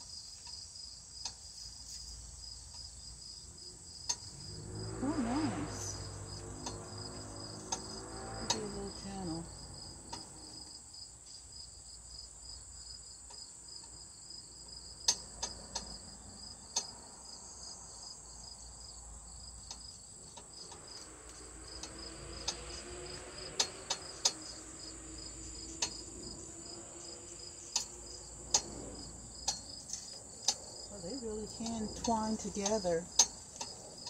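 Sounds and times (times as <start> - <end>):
crickets chirping: 0.0 - 34.0
faint low hum: 1.4 - 11.2, 17.6 - 34.0.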